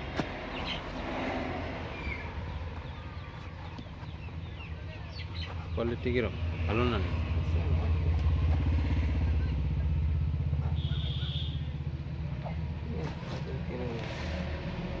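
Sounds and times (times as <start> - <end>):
motorcycle engine passing: 6.4 - 12.4.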